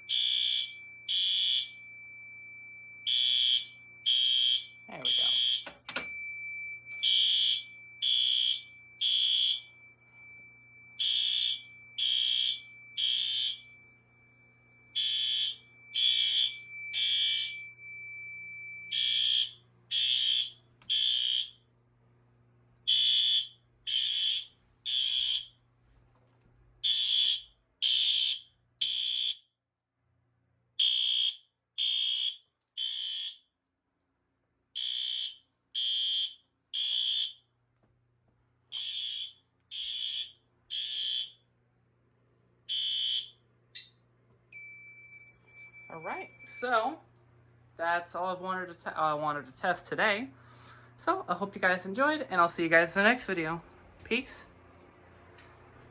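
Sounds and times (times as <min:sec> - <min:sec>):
steady high alarm tone: 0:00.0 - 0:21.6, 0:22.9 - 0:25.5, 0:26.8 - 0:29.5, 0:30.8 - 0:33.4, 0:34.8 - 0:37.4, 0:38.7 - 0:41.4, 0:42.7 - 0:43.9, 0:44.5 - 0:47.0
fire alarm horn blasts: 0:00.0 - 0:21.7, 0:22.9 - 0:25.6, 0:26.8 - 0:29.5, 0:30.8 - 0:33.5, 0:34.8 - 0:37.4, 0:38.7 - 0:41.4, 0:42.7 - 0:43.4, 0:44.5 - 0:47.0.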